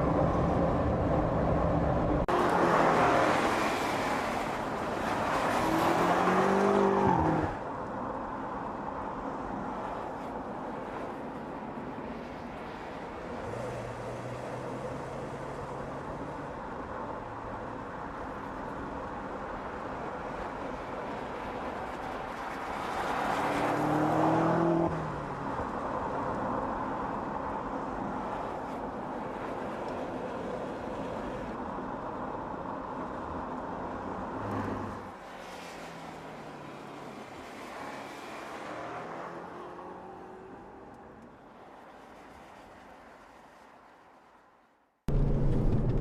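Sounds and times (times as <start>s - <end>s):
car engine at speed: 0.0s - 7.7s, 21.9s - 26.6s, 45.1s - 46.0s
tyre and road noise: 0.0s - 46.0s
low engine hum: 45.1s - 46.0s.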